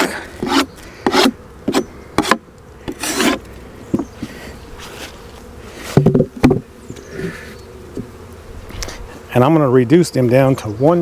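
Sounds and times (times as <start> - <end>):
wooden scrape: 0.0 - 6.6
honeybees buzzing: 0.0 - 11.0
wooden knocks of hive boxes: 1.6 - 2.5, 3.9 - 4.4, 5.9 - 8.3.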